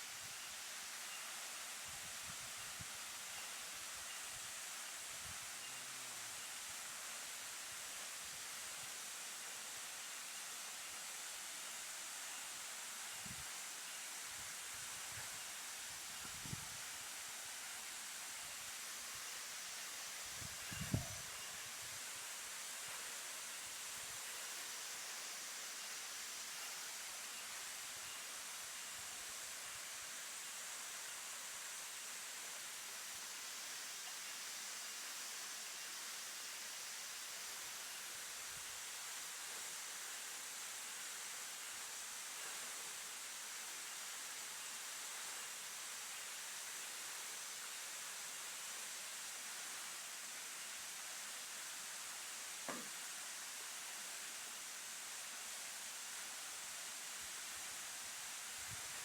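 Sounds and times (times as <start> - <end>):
brief knock: 52.7 - 52.9.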